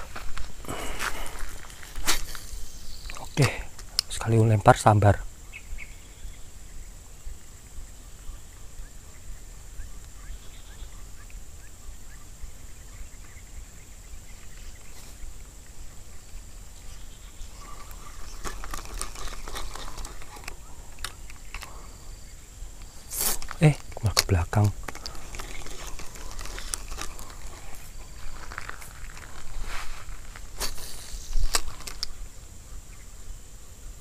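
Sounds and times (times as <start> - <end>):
insect drone: 0.0 - 34.0
faint bird chirps: 2.2 - 24.0, 32.0 - 34.0
clicking and rustling: 17.7 - 21.8, 22.8 - 29.6, 31.3 - 32.2.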